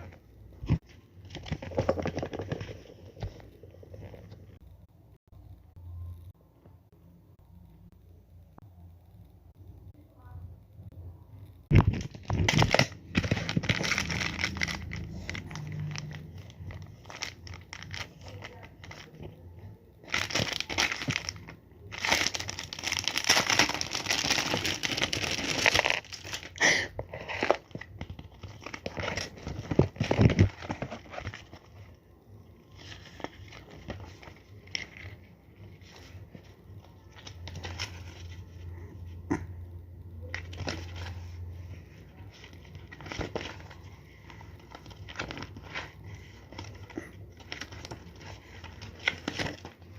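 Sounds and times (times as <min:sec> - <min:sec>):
packaging crinkling and rustling: 0:11.7 - 0:19.3, 0:20.0 - 0:32.0, 0:42.2 - 0:49.9.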